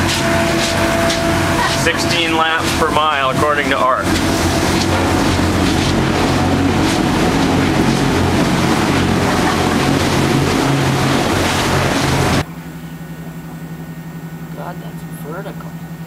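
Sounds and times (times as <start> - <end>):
water rushing: 0.0 - 12.4
boat engine hum: 0.0 - 16.0.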